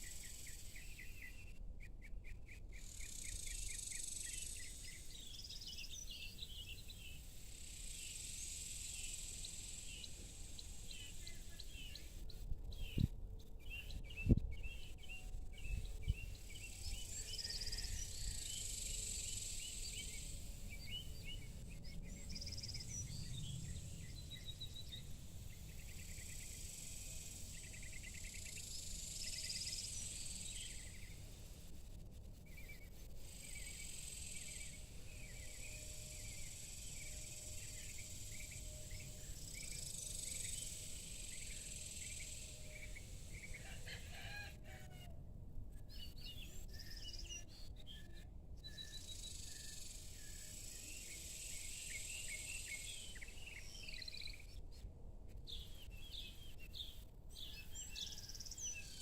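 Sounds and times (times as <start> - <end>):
high insect chorus: 0.0 - 1.3, 2.7 - 13.1, 15.2 - 44.8, 48.7 - 54.6.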